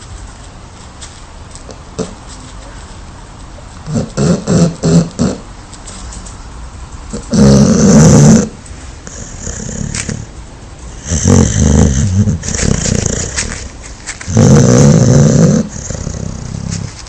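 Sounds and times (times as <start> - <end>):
dog snoring: 3.8 - 5.5, 7.1 - 10.3, 10.9 - 13.7, 14.3 - 17.0.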